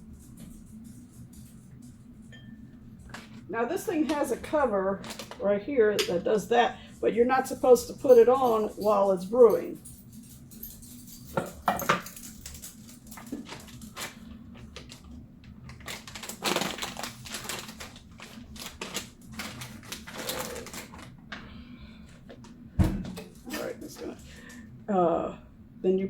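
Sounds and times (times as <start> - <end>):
clicks and knocks of coffee maker parts: 11.3 - 15.0.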